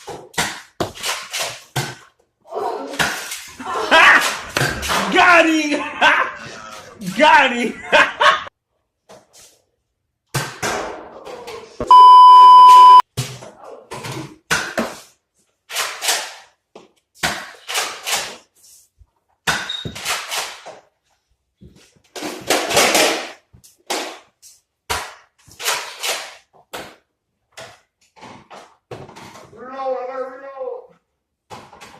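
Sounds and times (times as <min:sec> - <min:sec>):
loud steady beep tone: 0:11.8 - 0:13.0.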